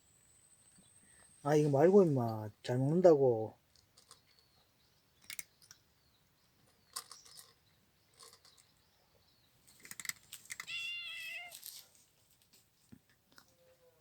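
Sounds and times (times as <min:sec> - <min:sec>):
cat meowing: 0:10.6 - 0:11.6.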